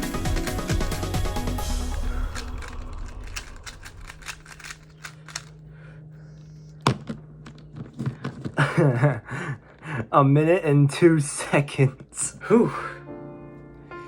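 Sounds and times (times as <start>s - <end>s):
background music: 0.0s - 5.1s, 12.2s - 14.0s
low steady hum: 1.9s - 12.5s
puzzle cube clicking: 2.2s - 5.5s.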